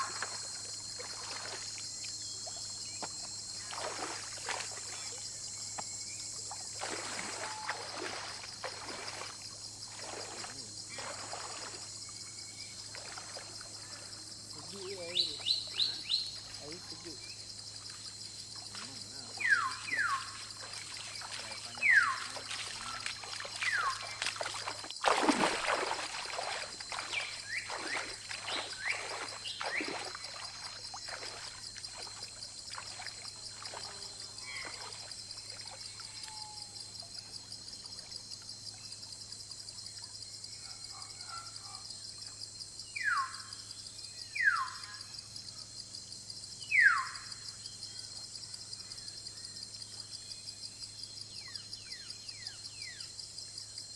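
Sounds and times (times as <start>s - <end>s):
forest insects chorus: 0.0s - 53.9s.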